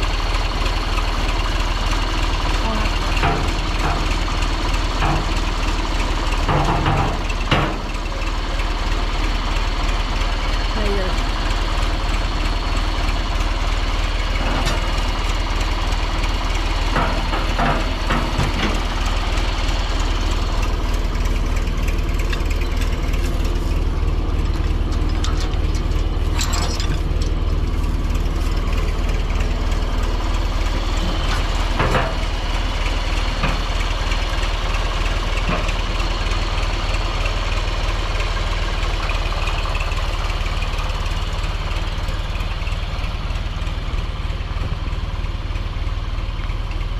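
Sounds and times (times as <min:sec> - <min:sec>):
tractor engine running: 0:00.0 - 0:46.9
sharp metal clanks: 0:25.0 - 0:27.6.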